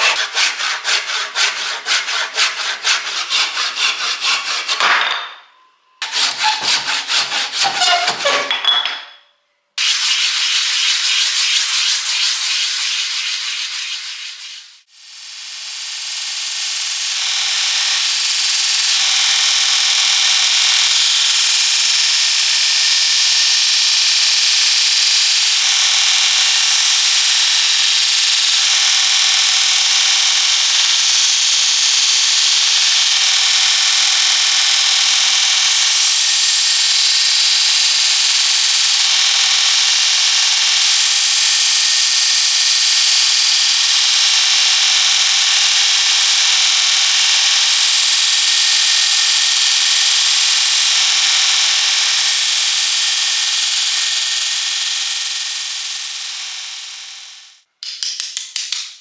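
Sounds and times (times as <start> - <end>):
power sander running: 0.0 - 5.2, 6.0 - 7.9, 44.0 - 57.4.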